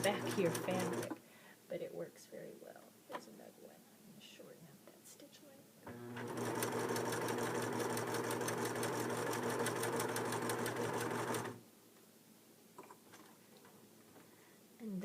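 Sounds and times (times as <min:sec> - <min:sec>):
sewing machine running: 0:00.0 - 0:01.1, 0:05.9 - 0:11.6.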